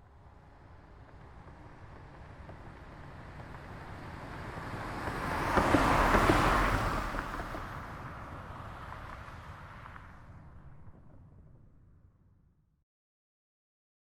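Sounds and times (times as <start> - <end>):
car driving past: 2.8 - 11.8.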